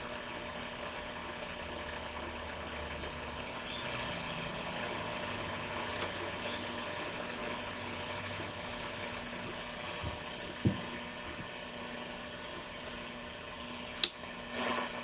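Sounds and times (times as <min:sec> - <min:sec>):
steady low hum: 0:00.0 - 0:15.0
radio static hiss: 0:14.4 - 0:15.0.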